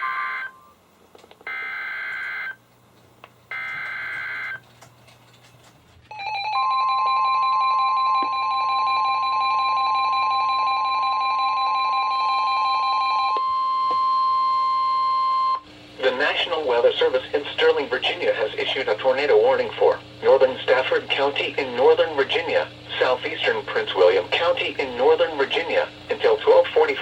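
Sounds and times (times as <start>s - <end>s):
loud steady warning alarm tone: 0.0s - 0.8s, 1.5s - 2.6s, 3.5s - 4.6s, 6.1s - 19.6s.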